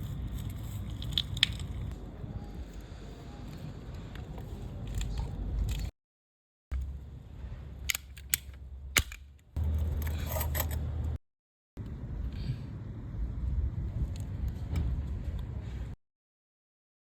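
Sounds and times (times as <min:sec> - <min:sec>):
tools and plastic pipe clicking: 0:00.4 - 0:02.0, 0:07.8 - 0:10.9
low rumble: 0:11.8 - 0:16.0.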